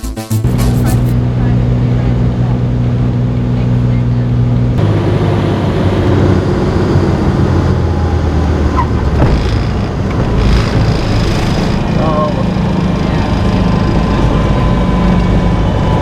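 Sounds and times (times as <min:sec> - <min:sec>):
propeller aircraft engine drone: 0:00.5 - 0:16.0
rushing airflow: 0:00.5 - 0:16.0.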